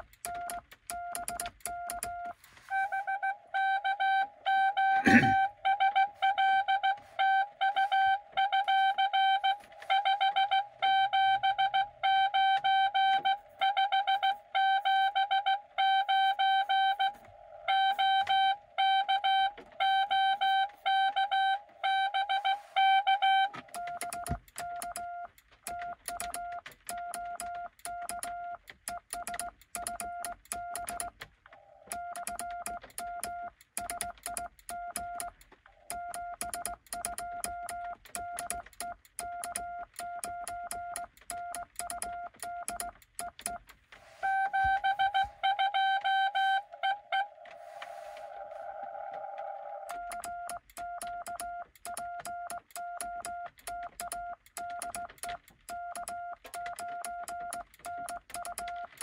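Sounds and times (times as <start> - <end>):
buzzy morse code beeps: 0.0 - 43.6, 44.2 - 59.0
soft morse sidetone: 1.8 - 24.3, 44.1 - 51.5
morse key clicks: 23.1 - 47.5, 49.9 - 59.0.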